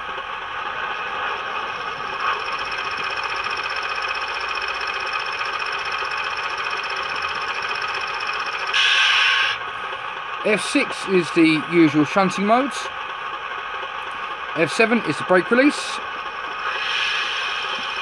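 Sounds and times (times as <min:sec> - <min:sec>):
diesel engine idling sound: 0:00.0 - 0:18.0
model locomotive compressor sound: 0:00.0 - 0:18.0.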